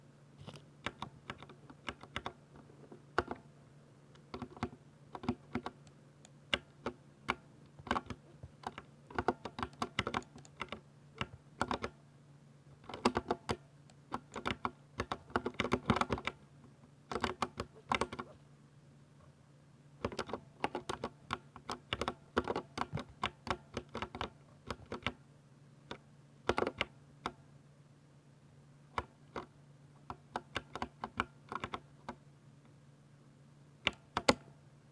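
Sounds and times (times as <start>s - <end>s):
faint low hum: 0.0s - 34.9s
mechanical keyboard typing: 0.4s - 2.4s, 4.2s - 5.8s, 6.5s - 12.0s, 12.8s - 16.4s, 17.1s - 18.3s, 20.0s - 25.2s, 26.5s - 26.9s, 30.1s - 32.2s, 33.8s - 34.5s.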